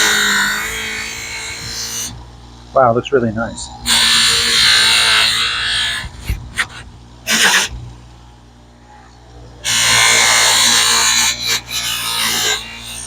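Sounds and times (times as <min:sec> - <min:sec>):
harsh rushing grind of polishing: 0:00.0 - 0:02.2, 0:03.8 - 0:07.8, 0:09.6 - 0:13.0
buffing wheel motor hum: 0:00.0 - 0:02.7, 0:03.6 - 0:13.0.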